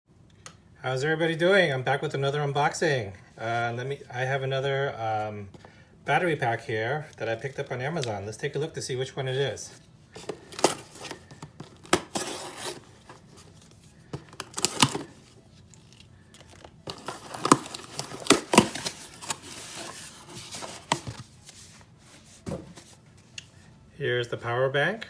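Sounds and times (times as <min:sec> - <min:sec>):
packaging torn and crinkled: 0:10.2 - 0:21.2.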